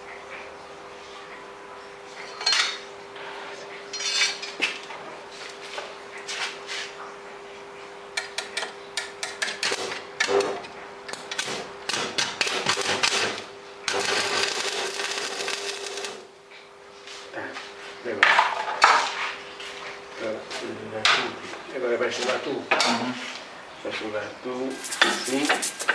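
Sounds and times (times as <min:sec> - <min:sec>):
arc welding crackle: 0:24.7 - 0:25.9.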